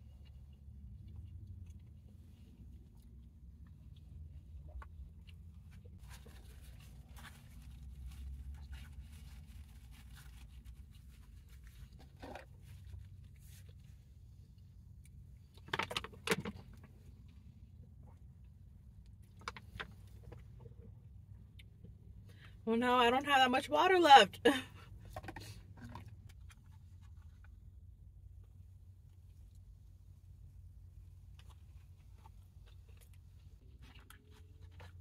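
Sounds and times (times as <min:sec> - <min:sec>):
person chewing: 0:31.3 - 0:35.0.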